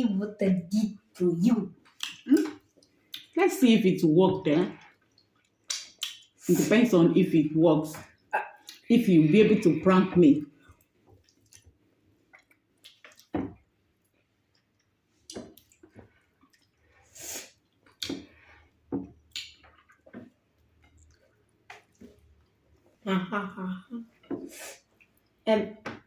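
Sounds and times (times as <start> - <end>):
wet eating smacks and squishes: 1.8 - 3.4, 4.6 - 6.4, 10.8 - 23.0.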